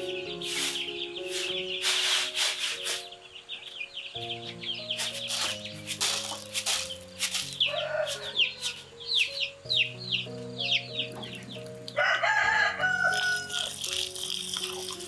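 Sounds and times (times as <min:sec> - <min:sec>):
high falling chirps: 0:00.0 - 0:15.0
rooster crowing: 0:07.6 - 0:09.0, 0:12.0 - 0:13.8.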